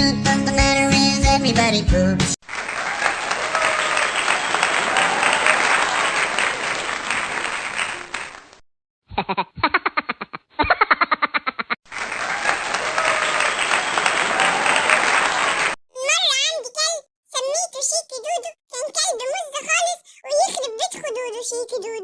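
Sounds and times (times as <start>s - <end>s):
applause: 2.4s - 8.6s, 11.9s - 15.8s.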